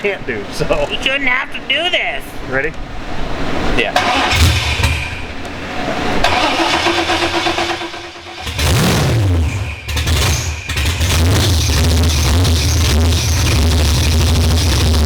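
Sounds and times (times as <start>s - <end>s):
engine cranking: 4.0s - 5.2s, 6.2s - 15.0s
engine revving and idling: 6.2s - 15.0s.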